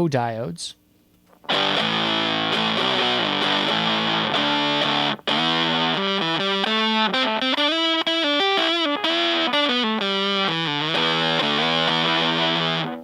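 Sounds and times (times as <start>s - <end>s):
fuzz-distorted electric guitar: 1.4s - 13.0s.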